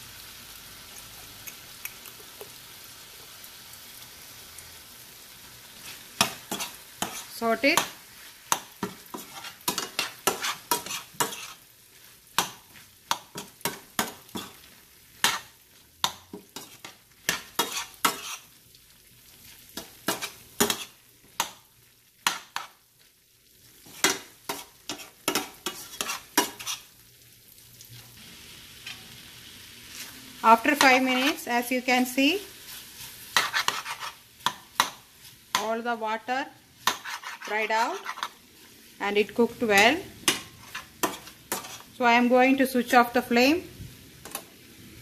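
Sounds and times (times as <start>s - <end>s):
low sizzle: 0.0s - 45.0s
spoon scraping a pan: 5.7s - 18.6s, 19.4s - 21.6s, 22.2s - 22.8s, 23.7s - 27.0s, 28.8s - 29.2s, 29.8s - 43.0s.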